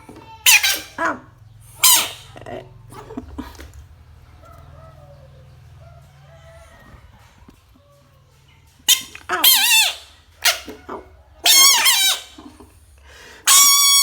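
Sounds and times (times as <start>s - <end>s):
frog squeaky cries: 0.4s - 2.4s, 8.8s - 12.5s, 13.5s - 14.0s.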